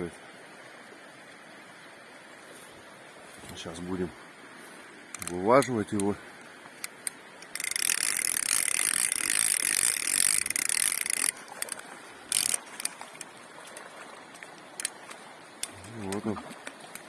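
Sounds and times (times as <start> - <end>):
fishing reel whirring: 5.2 - 5.4, 6.8 - 13.3
light clicks: 5.2 - 6.2.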